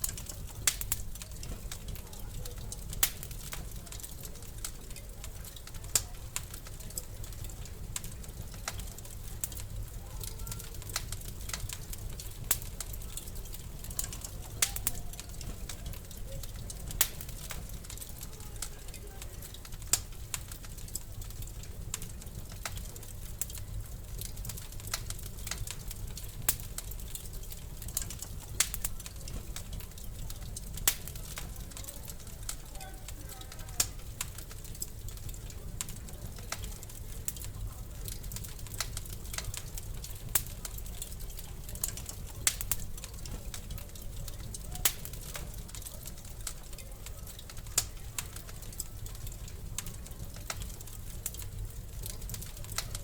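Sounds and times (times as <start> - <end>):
wood fire crackling and popping: 0.0 - 53.0.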